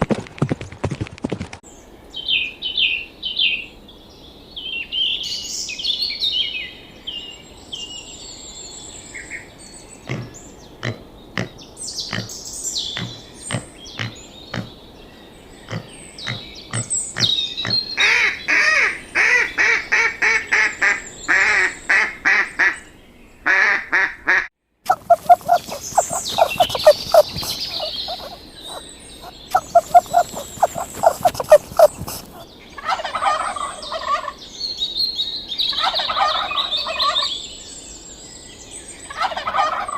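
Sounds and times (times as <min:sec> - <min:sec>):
birds chirping and calling: 0:24.9 - 0:32.4
rattling bird calls: 0:24.9 - 0:32.4.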